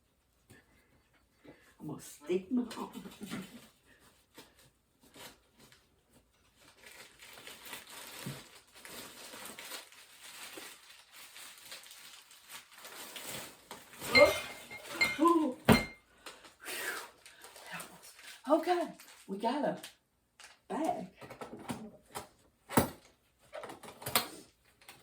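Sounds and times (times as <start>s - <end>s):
plastic bags rustling: 2.5s - 20.6s
dog whining: 14.1s - 15.4s.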